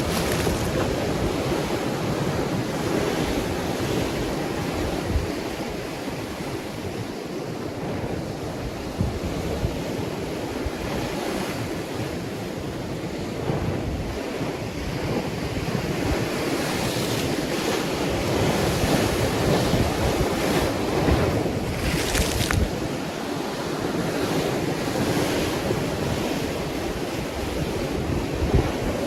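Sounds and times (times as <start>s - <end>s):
wave breaking: 0.0s - 1.8s, 21.2s - 23.0s
ocean surf washing: 0.0s - 29.0s
wind buffeting microphone: 0.0s - 29.0s.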